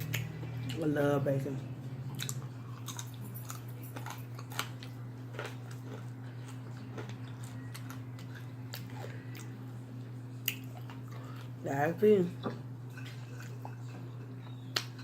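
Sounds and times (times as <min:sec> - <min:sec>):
chewing bacon crunches: 0:02.0 - 0:11.6, 0:12.8 - 0:15.0.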